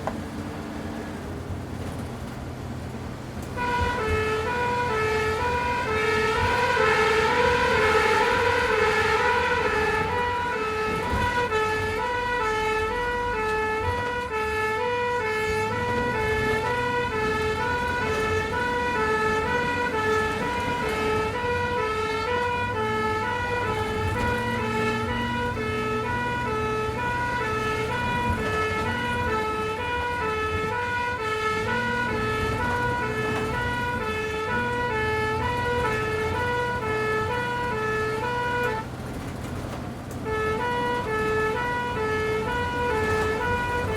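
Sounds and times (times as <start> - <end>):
engine humming: 0.0 - 43.9
two-tone siren: 3.5 - 43.9.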